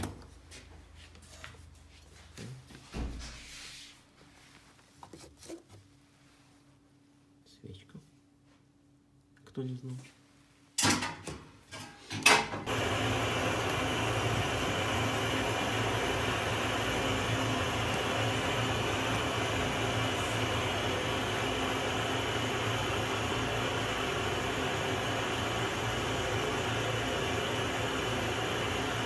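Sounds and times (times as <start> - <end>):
fan whirring hum: 10.8 - 29.0.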